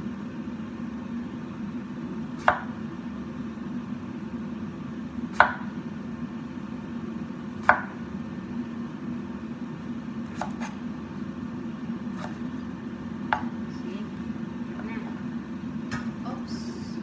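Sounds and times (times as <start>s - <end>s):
steady low hum: 0.0s - 17.0s
knife chopping on cutting board: 2.4s - 2.8s, 5.4s - 5.8s, 7.6s - 8.0s, 10.3s - 10.8s, 12.2s - 12.7s, 13.3s - 13.6s.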